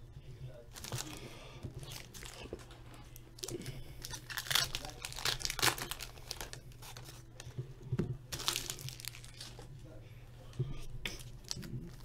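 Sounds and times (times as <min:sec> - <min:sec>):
card pack wrappers crinkling: 0:00.7 - 0:01.2, 0:01.8 - 0:02.8, 0:03.4 - 0:07.5, 0:08.3 - 0:09.7.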